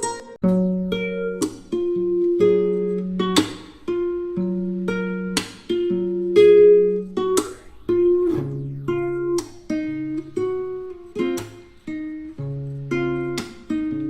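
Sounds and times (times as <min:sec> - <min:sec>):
acoustic guitar playing: 0:00.0 - 0:14.0.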